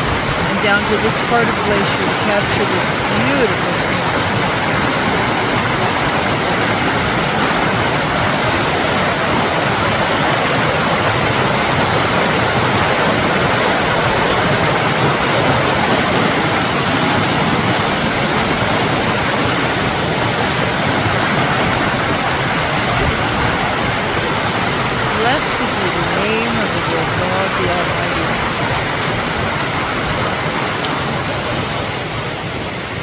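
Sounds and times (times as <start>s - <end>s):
mountain creek rushing: 0.0s - 33.0s.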